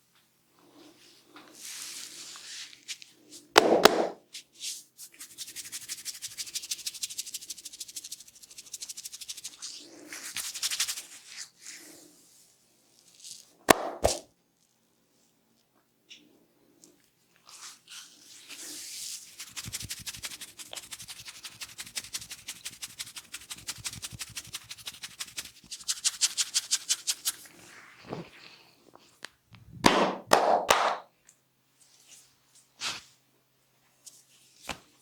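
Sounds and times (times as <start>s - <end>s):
percussive massage strokes tapping: 3.6s - 4.2s, 13.7s - 14.2s, 29.8s - 31.1s.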